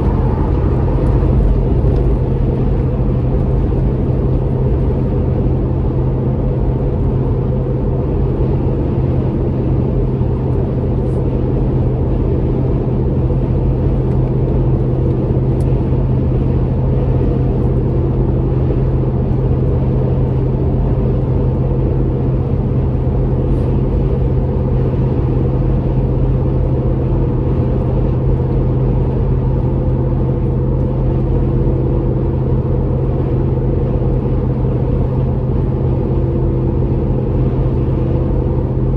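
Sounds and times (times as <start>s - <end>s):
low exhaust drone: 0.0s - 38.9s
road and tyre noise: 0.0s - 38.9s.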